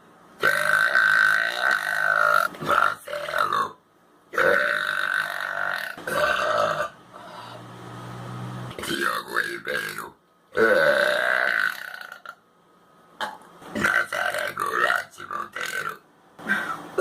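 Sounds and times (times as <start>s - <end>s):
person talking while burping: 13.8s - 16.0s.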